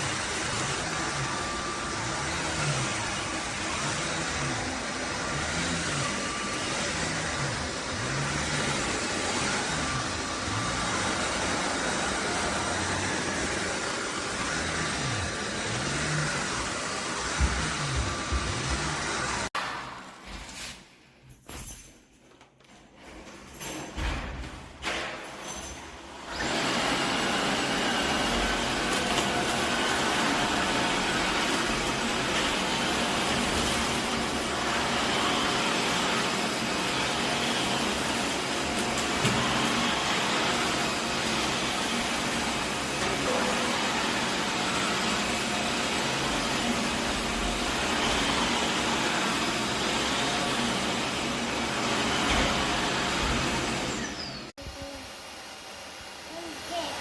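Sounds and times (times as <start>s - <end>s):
vacuum cleaner running: 0.0s - 19.6s, 26.0s - 57.0s.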